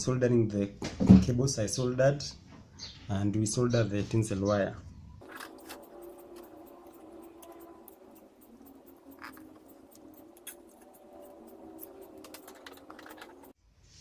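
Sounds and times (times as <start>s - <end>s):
soldering gun humming: 5.2s - 13.6s
tools clicking and tapping: 5.2s - 13.6s.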